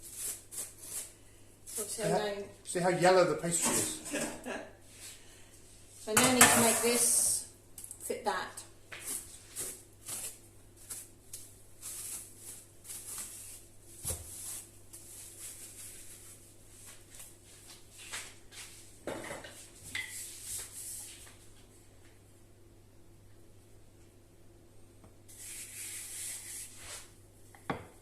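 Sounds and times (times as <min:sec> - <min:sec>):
dishes and utensils clinking: 0:03.6 - 0:04.4, 0:06.1 - 0:07.2.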